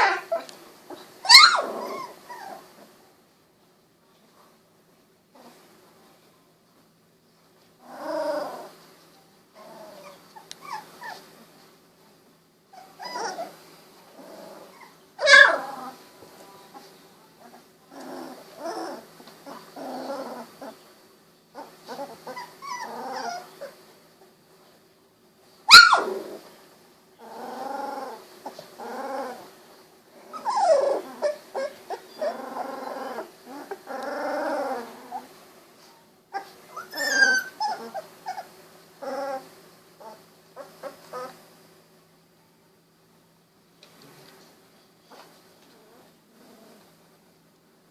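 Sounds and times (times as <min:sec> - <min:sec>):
puppy yelps: 0:00.0 - 0:00.5, 0:01.2 - 0:02.6, 0:10.0 - 0:11.2, 0:12.8 - 0:13.6, 0:14.7 - 0:15.9, 0:21.9 - 0:23.5, 0:25.7 - 0:26.3, 0:30.3 - 0:33.8, 0:36.3 - 0:39.4
puppies crying: 0:01.2 - 0:02.7, 0:09.9 - 0:11.2, 0:12.7 - 0:13.6, 0:14.6 - 0:16.0, 0:21.6 - 0:23.7, 0:25.7 - 0:26.2, 0:30.3 - 0:35.0, 0:36.3 - 0:41.4.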